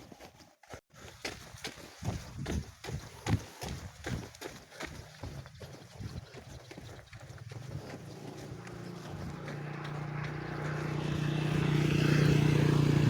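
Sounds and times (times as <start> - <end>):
running footsteps: 0.0 - 12.8
vehicle engine hum approaching: 7.5 - 13.0.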